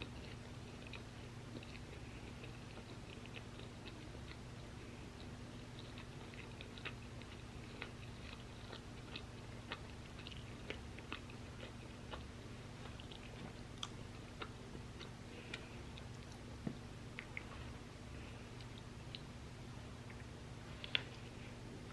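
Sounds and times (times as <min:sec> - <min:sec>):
crunchy chewing of fries: 0:00.0 - 0:21.9
faint steady hum: 0:00.0 - 0:21.9.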